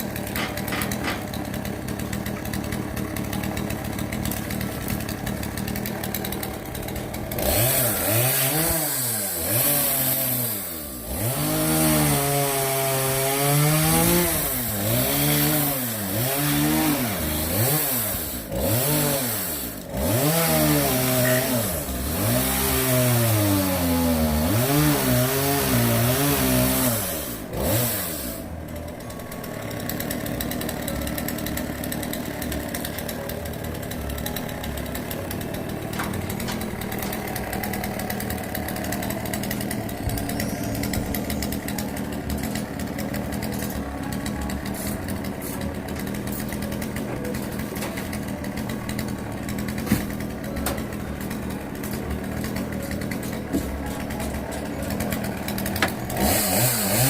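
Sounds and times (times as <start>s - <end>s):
engine running steadily: 0.0s - 11.7s, 26.4s - 57.0s.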